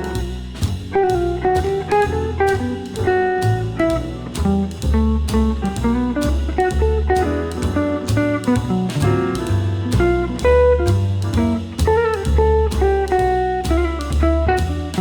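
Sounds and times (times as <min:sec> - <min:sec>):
bass: 0:00.0 - 0:15.0
plucked guitar melody: 0:00.0 - 0:15.0
steady beat: 0:00.0 - 0:15.0.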